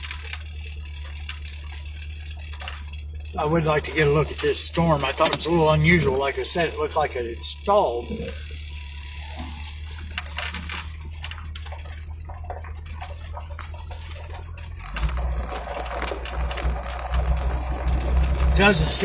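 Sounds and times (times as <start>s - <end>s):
vehicle engine humming: 0.0s - 19.0s
faint ticks: 8.1s - 19.0s.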